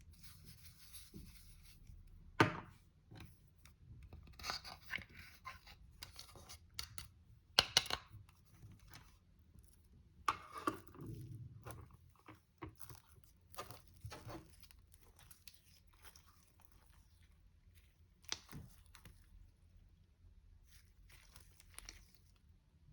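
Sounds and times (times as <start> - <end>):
slime crackling and crunching: 12.5 - 19.5, 20.6 - 22.4.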